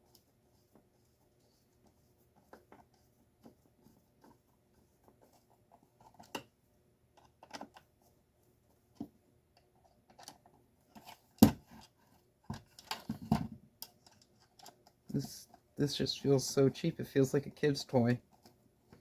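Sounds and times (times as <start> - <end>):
clicks and knocks of plastic parts: 10.1 - 15.1.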